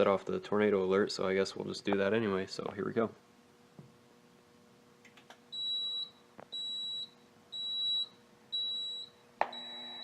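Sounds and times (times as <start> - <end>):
high-pitched alarm beeps: 5.6 - 10.0.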